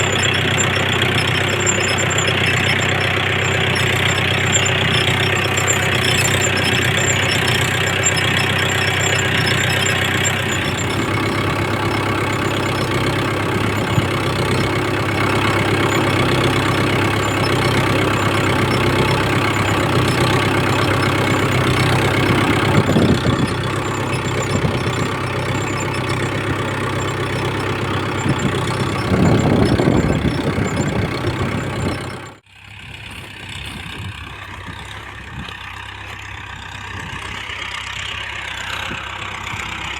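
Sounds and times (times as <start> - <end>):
plough pulled through soil: 0.0 - 39.9
tractor diesel engine running: 0.0 - 39.9.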